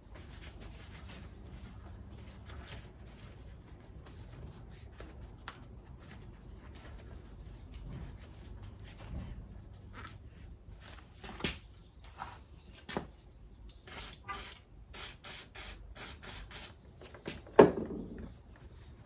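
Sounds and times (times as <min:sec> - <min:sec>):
quick hissing strokes: 0:13.8 - 0:16.8.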